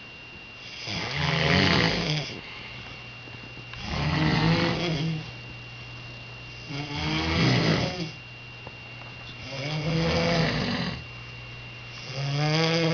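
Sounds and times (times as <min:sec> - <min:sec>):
faint steady hum: 0:00.0 - 0:12.9
person snoring: 0:00.7 - 0:02.5, 0:03.8 - 0:05.3, 0:06.6 - 0:08.2, 0:09.4 - 0:11.0, 0:12.0 - 0:12.9.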